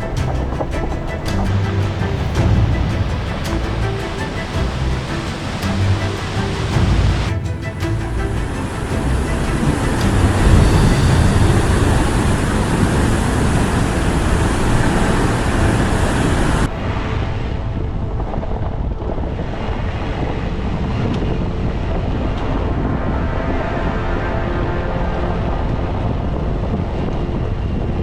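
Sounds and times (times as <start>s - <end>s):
vehicle driving on gravel: 0.0s - 16.7s
wind noise: 0.0s - 28.0s.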